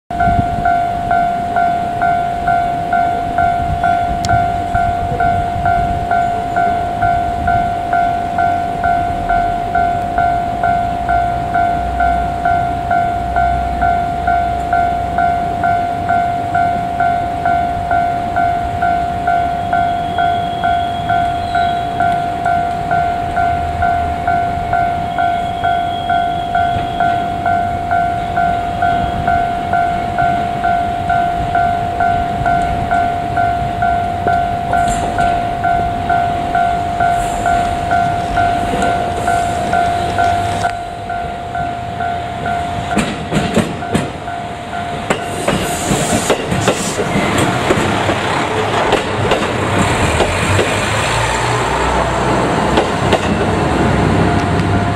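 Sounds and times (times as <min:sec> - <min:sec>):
diesel railcar running: 0:00.1 - 0:54.9
level crossing warning bell: 0:00.1 - 0:54.9
train wheel clatter: 0:33.8 - 0:35.5, 0:42.4 - 0:54.9.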